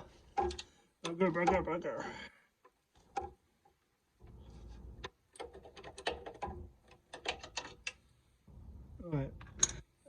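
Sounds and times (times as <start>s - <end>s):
metal tools clicking and tapping: 9.4s - 9.9s.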